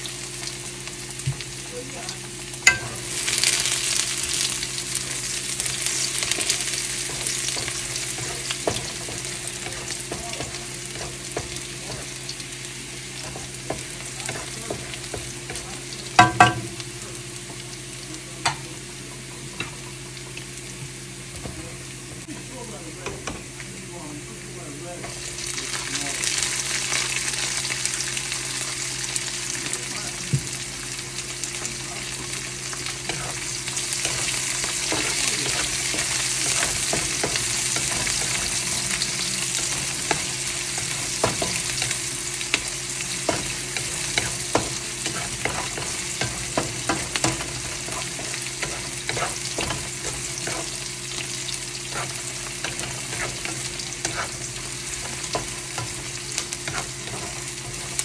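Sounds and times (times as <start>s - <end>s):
food sizzling in a hot pan: 0.0s - 58.0s
utensil scraping a pan: 43.2s - 50.8s, 51.8s - 58.0s.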